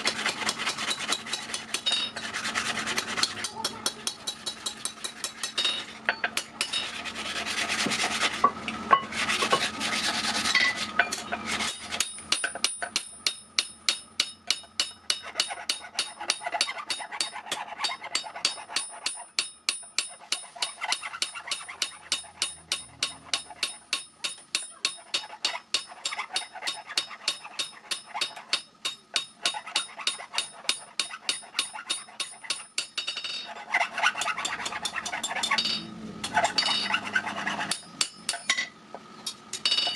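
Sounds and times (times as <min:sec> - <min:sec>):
rasping strokes on steel blade: 0:00.0 - 0:38.5
thin high metallic ring: 0:35.2 - 0:37.0.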